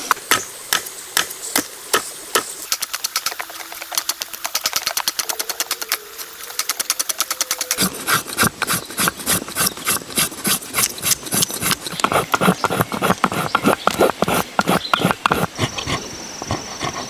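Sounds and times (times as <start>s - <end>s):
hand tool striking wood: 6.8s - 17.0s
scraping on wood: 7.5s - 17.0s.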